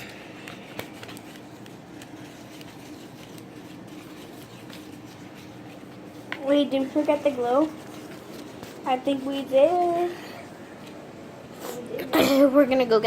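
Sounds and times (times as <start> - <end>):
clicks and rustles of handling: 0.0 - 10.0
faint steady hum: 0.0 - 13.0.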